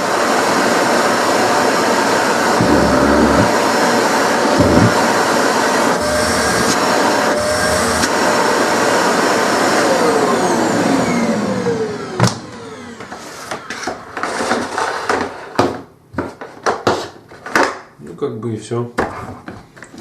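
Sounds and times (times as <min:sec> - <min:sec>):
vacuum cleaner motor whine: 0:00.0 - 0:14.9.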